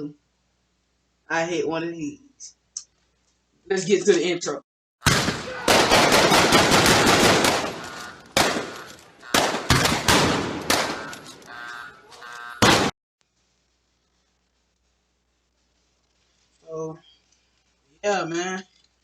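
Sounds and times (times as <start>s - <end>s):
automatic gunfire burst: 5.0s - 11.3s
single gunshots: 5.0s - 11.4s, 12.6s - 12.9s.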